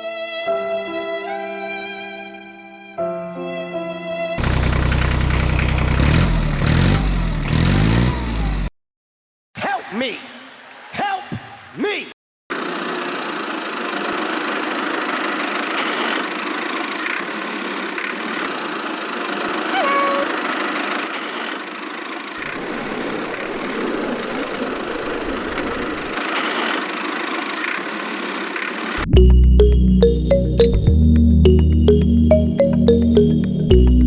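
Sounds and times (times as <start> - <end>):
small motor running: 12.6 - 23.9, 25.5 - 29.0
music with steady beat: 29.0 - 34.0.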